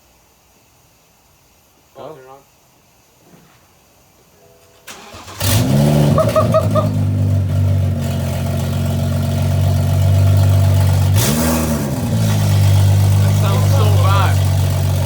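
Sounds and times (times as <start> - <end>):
car engine starting and idling: 4.7 - 15.0.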